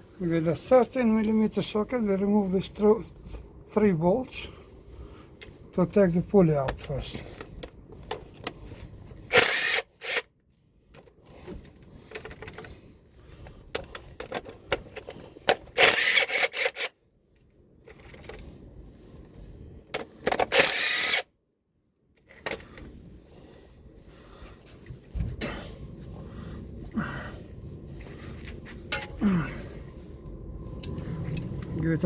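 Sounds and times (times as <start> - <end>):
socket tool bursts: 9.3 - 10.2.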